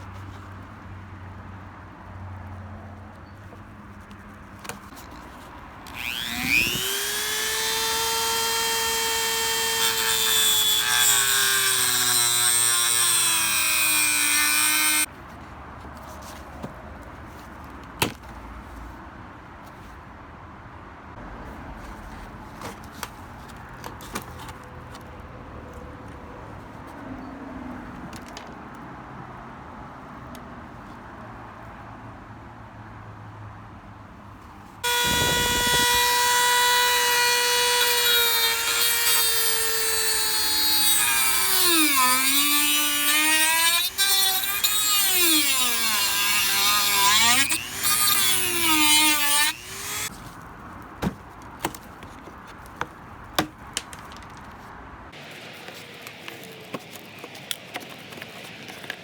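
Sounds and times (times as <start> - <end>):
power tool motor whining: 5.9 - 15.1, 34.8 - 50.1.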